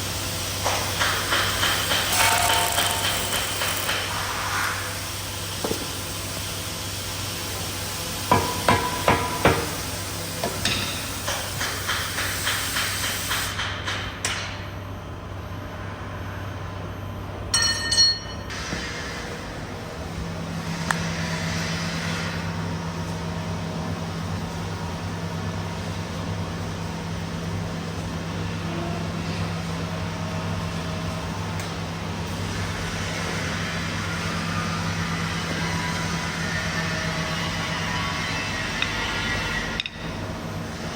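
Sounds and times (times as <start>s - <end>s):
low machine hum: 0.0s - 11.9s, 13.8s - 40.9s
hammer striking metal: 1.0s - 4.0s, 8.3s - 9.7s, 39.7s - 40.2s
high ringing tone: 2.2s - 3.3s, 17.5s - 18.6s.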